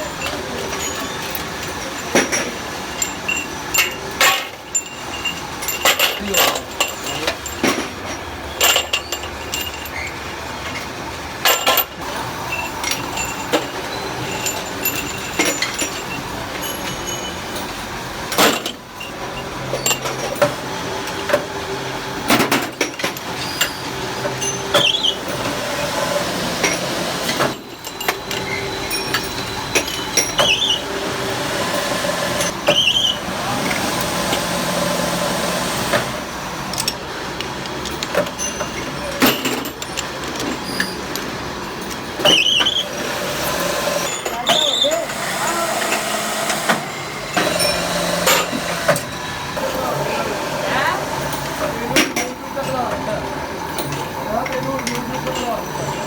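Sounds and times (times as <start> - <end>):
metal parts clinking: 0.0 - 21.3, 26.6 - 30.8, 36.7 - 42.9
workshop noise: 0.0 - 56.0.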